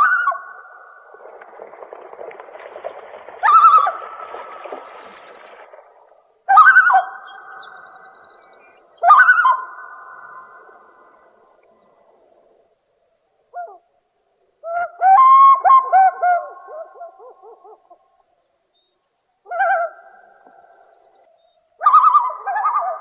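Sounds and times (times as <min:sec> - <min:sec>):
loon calls: 0:03.4 - 0:05.5, 0:06.5 - 0:08.0, 0:09.0 - 0:10.8, 0:19.4 - 0:20.9, 0:21.8 - 0:23.0.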